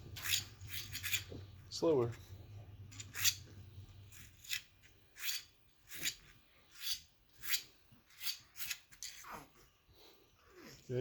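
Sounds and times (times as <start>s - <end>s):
fidget toy rasping: 0.0s - 1.4s, 2.9s - 9.3s.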